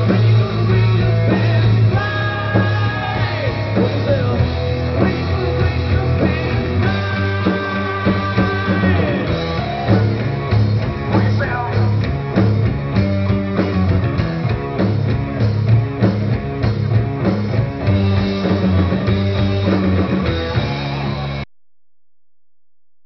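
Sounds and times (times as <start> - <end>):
drum kit beat: 0.0 - 21.4
electric guitar: 0.0 - 21.4
bass guitar: 0.0 - 21.5.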